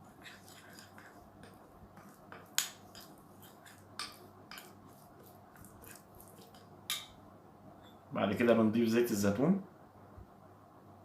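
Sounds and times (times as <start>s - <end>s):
spoon tapping against dish: 0.3s - 7.2s.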